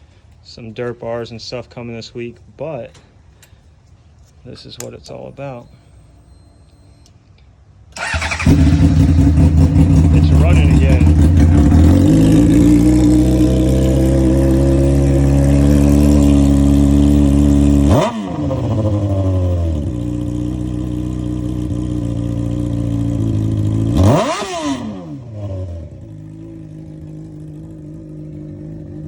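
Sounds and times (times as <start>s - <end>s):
motorcycle engine idling and revving: 8.0s - 29.0s.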